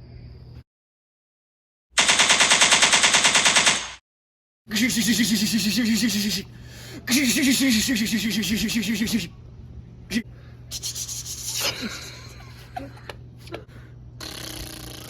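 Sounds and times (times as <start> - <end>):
person imitating machine-gun fire: 2.0 - 4.0, 4.7 - 6.5, 7.1 - 9.3, 14.2 - 15.0.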